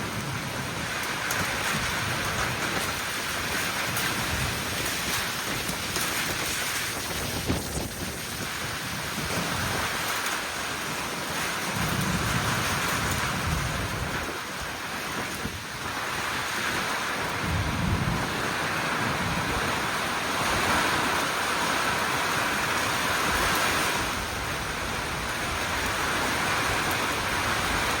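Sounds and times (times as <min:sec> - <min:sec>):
rain falling: 0:00.0 - 0:28.0
low thunder rumbling: 0:17.1 - 0:22.6.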